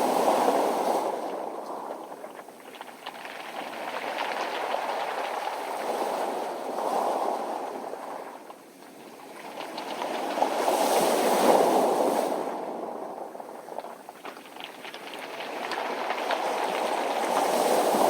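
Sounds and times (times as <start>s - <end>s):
pebbles clattering in surf: 13.8s - 18.0s.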